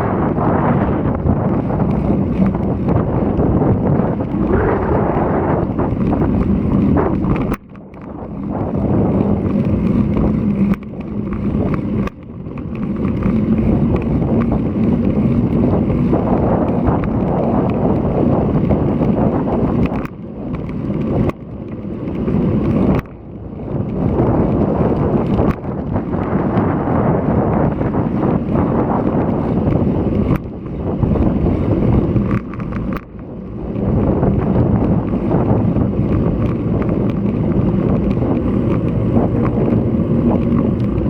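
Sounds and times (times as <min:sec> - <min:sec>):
gusty wind buffeting microphone: 0:00.0 - 0:41.0.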